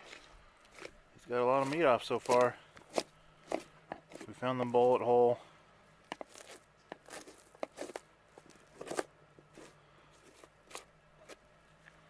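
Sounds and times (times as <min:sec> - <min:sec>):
knife tearing meat and hide: 0:00.0 - 0:04.4, 0:06.2 - 0:11.4.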